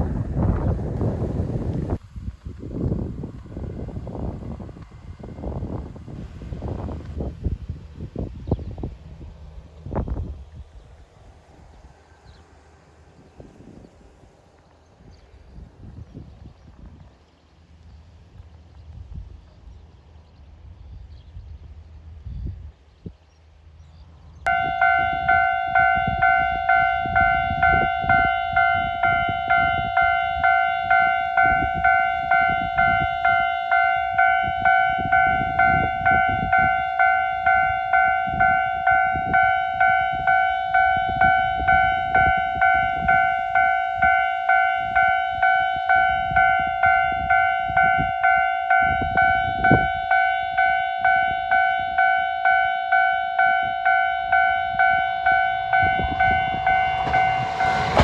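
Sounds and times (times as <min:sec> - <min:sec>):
level crossing bell dinging: 0:24.5 - 0:58.0.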